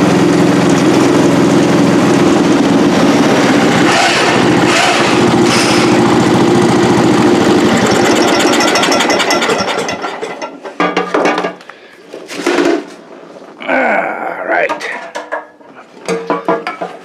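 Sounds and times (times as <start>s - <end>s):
lawn tractor engine running: 0.0s - 10.7s.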